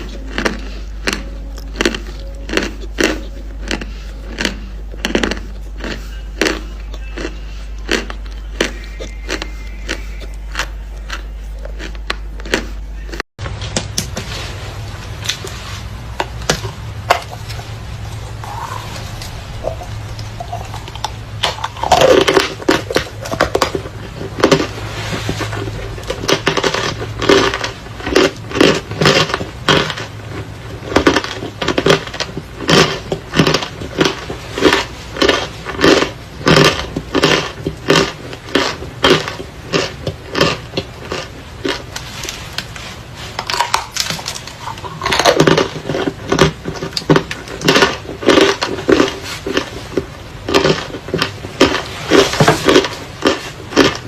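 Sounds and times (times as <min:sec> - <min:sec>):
chalk and clay crunching: 0:00.0 - 0:54.0.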